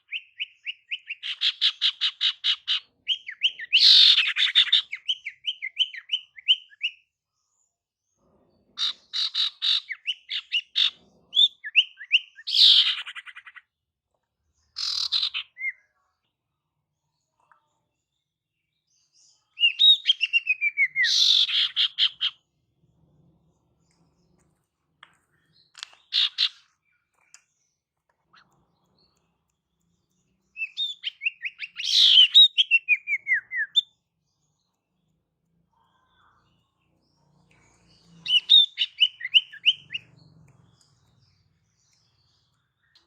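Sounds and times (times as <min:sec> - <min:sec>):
bird chattering and whistling: 0:00.0 - 0:07.0, 0:08.8 - 0:13.6, 0:14.8 - 0:15.8, 0:19.6 - 0:22.4, 0:25.8 - 0:26.8, 0:30.6 - 0:33.9, 0:38.1 - 0:40.1.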